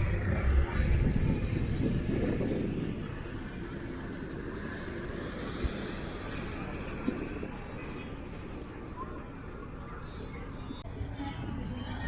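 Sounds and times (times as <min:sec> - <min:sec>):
traffic rumble: 0:00.0 - 0:12.0.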